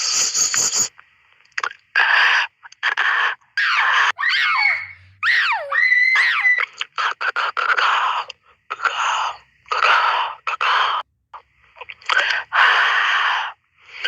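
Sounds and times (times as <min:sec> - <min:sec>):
animal screeching: 0:03.6 - 0:06.8.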